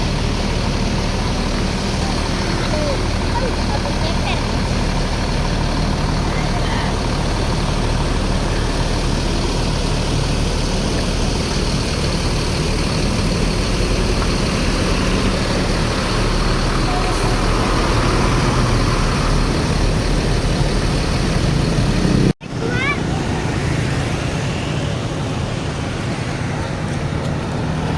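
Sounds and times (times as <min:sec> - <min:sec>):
bus diesel engine idling: 0:00.0 - 0:27.9.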